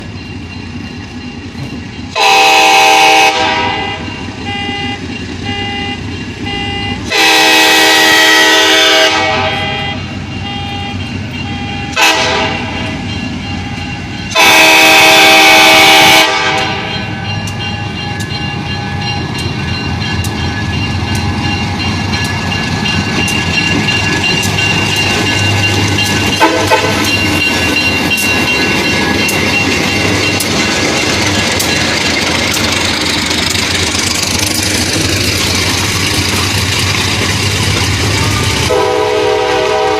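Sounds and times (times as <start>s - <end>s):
train running past: 0.0s - 39.9s
steam locomotive whistle blasts: 2.2s - 17.2s, 26.4s - 27.1s, 38.7s - 39.9s.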